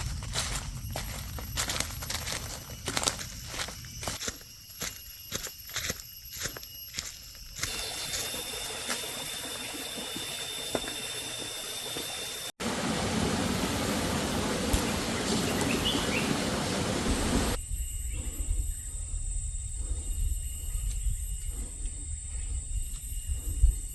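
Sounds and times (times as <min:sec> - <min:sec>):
steady high whine: 0:07.6 - 0:17.7
steady hiss: 0:10.6 - 0:17.6
low rumble: 0:12.6 - 0:23.9.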